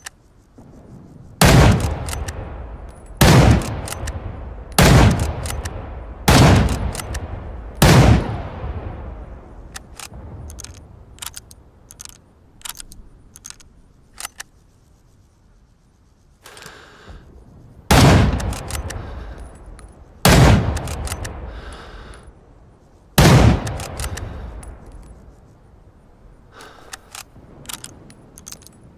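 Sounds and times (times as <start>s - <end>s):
light metallic clicks: 0.0s - 0.6s, 1.7s - 5.8s, 6.6s - 7.9s, 9.6s - 14.8s, 18.3s - 22.4s, 23.6s - 25.6s, 26.5s - 28.9s
loud rifle shots with echo: 1.4s - 10.3s, 17.9s - 19.3s, 20.2s - 21.7s, 23.2s - 24.8s
rifle bolt scrape: 9.7s - 15.0s, 26.6s - 28.8s.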